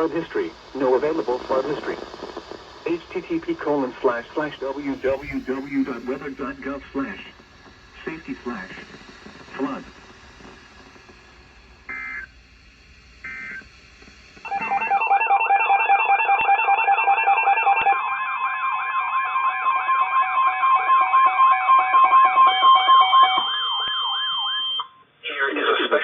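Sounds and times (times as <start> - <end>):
digital data bursts: 0.0 - 12.4, 13.2 - 13.7, 14.4 - 24.8
warbling alarm tone: 0.0 - 24.9
pulsing alert tones: 4.8 - 10.9.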